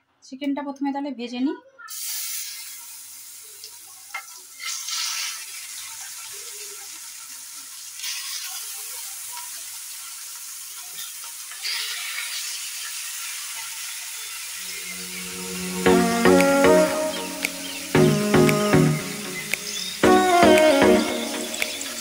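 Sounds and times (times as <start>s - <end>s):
chicken sizzling in hot oil: 1.9s - 15.9s.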